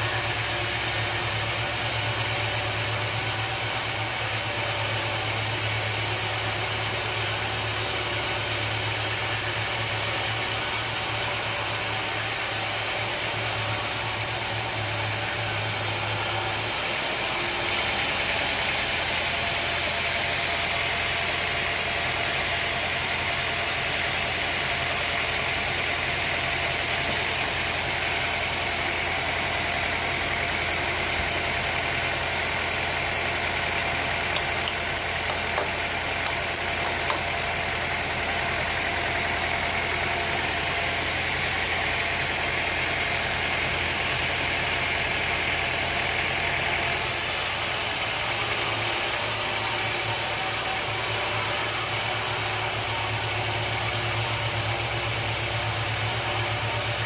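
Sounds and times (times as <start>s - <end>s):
machinery motor hum: 24.3s - 41.4s.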